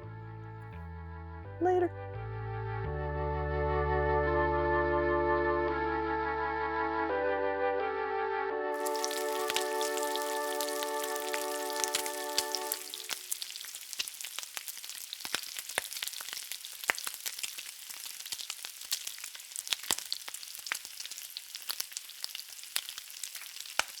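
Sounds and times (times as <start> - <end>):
crackling clicks and pops: 8.8 - 24.0
light hiss: 8.8 - 24.0.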